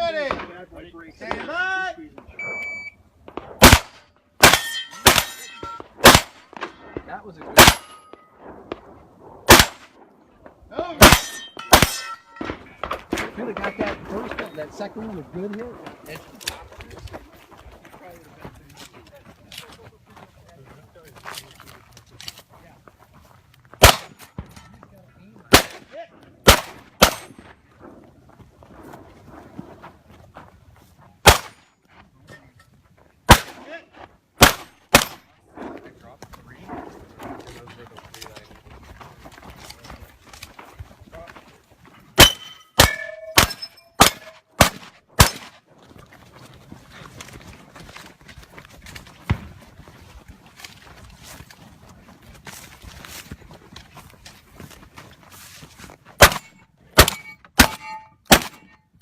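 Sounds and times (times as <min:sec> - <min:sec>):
shotgun shots: 0:03.3 - 0:10.0, 0:11.0 - 0:14.6, 0:23.8 - 0:24.5, 0:25.5 - 0:27.5, 0:31.2 - 0:31.6, 0:33.3 - 0:33.7, 0:34.4 - 0:35.8, 0:42.2 - 0:45.6, 0:56.2 - 0:58.7
steel targets ringing: 0:04.5 - 0:05.9, 0:11.0 - 0:12.8, 0:42.2 - 0:44.4, 0:56.3 - 0:58.8.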